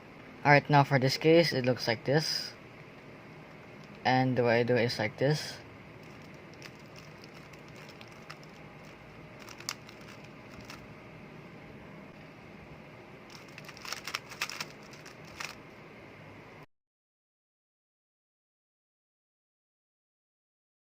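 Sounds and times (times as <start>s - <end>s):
puzzle cube turning clicks: 6.0s - 10.8s, 13.3s - 15.6s.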